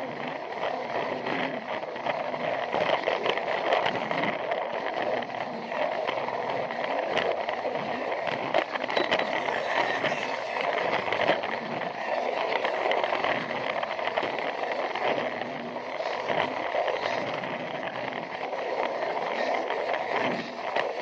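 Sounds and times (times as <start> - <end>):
toy train clicks and rattles: 8.8 - 11.4.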